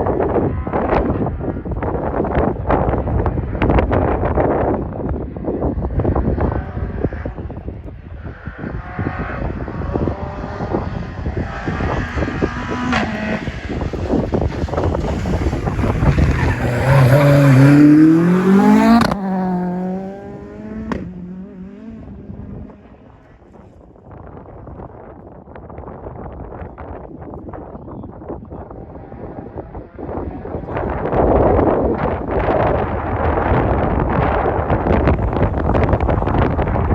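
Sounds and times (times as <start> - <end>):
rally car engine passing by: 8.2 - 23.6.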